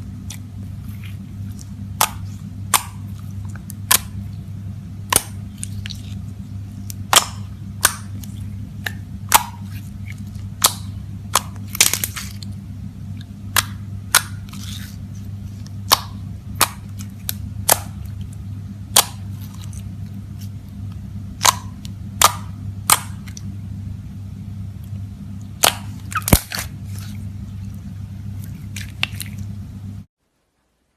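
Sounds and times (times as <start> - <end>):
steady low hum: 0.0 - 30.9
air popping clicks: 20.9 - 23.5, 24.8 - 26.7
slime squeezed by hand: 25.6 - 27.8.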